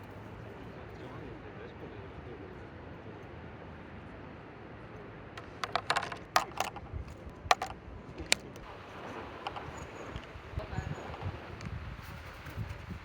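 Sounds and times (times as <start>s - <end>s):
small hard objects clicking: 5.4s - 8.6s, 9.4s - 10.3s.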